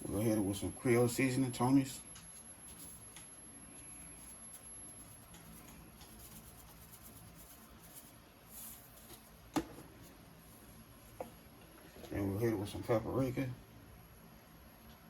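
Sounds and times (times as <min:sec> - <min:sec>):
soft rustle: 0:03.8 - 0:09.4.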